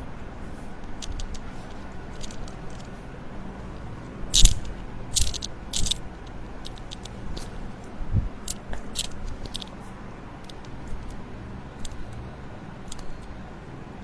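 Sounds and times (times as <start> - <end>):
joints cracking: 0.8 - 3.0, 4.3 - 7.6, 8.4 - 9.8, 11.8 - 12.2, 12.9 - 13.4.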